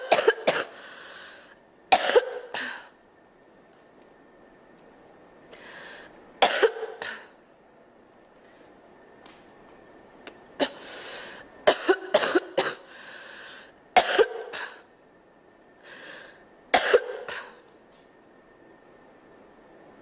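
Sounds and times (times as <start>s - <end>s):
girl coughing: 0.0s - 0.8s, 1.9s - 2.8s, 6.4s - 7.3s, 11.7s - 12.9s, 14.0s - 14.8s, 16.7s - 17.6s.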